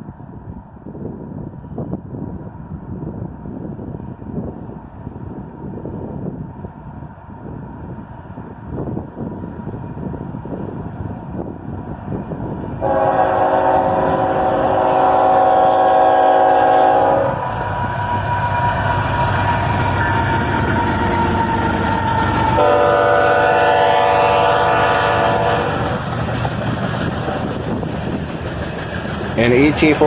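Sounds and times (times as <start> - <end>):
train rumbling past: 0.0 - 30.0
locomotive air horn blasts: 12.8 - 17.6, 22.6 - 26.0.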